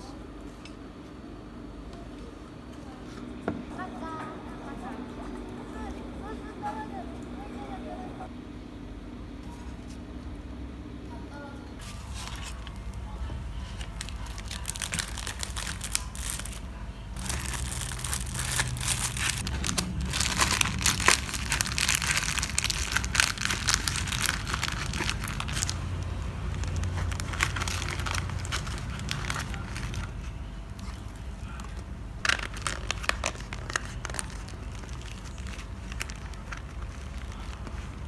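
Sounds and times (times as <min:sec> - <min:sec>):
low steady hum: 0:00.0 - 0:38.0
packaging crinkling: 0:11.8 - 0:38.0.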